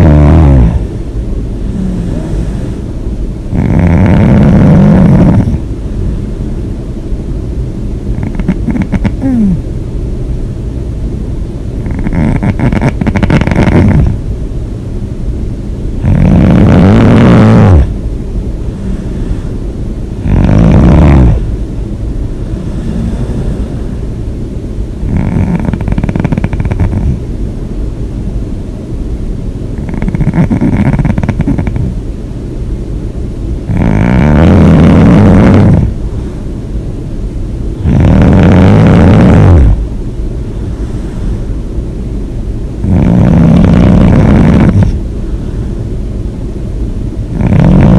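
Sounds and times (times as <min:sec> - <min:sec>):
person snoring loudly: 0:00.0 - 0:00.9, 0:01.7 - 0:02.8, 0:03.5 - 0:05.7, 0:08.2 - 0:09.6, 0:11.8 - 0:14.2, 0:16.0 - 0:18.0, 0:20.2 - 0:21.5, 0:22.4 - 0:23.9, 0:25.0 - 0:27.2, 0:29.8 - 0:32.0, 0:33.7 - 0:36.0, 0:37.8 - 0:39.8, 0:42.8 - 0:45.0, 0:47.3 - 0:47.9
quiet breathing: 0:00.0 - 0:06.8, 0:18.6 - 0:24.4, 0:33.6 - 0:37.2, 0:37.8 - 0:47.9.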